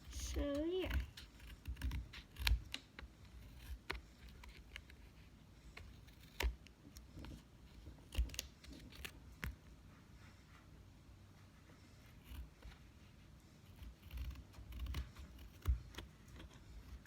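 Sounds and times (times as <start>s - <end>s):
scissors snipping paper: 0.0s - 7.4s, 8.0s - 9.6s, 13.7s - 17.0s.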